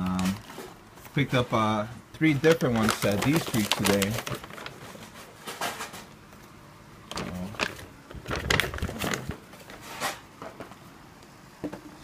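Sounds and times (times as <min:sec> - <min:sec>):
packaging rustling: 0:00.0 - 0:01.4, 0:02.2 - 0:06.1, 0:07.1 - 0:10.2.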